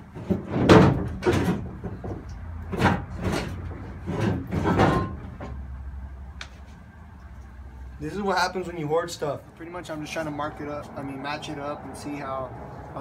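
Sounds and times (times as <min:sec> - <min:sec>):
car parts knocking and clattering: 0:00.0 - 0:05.7.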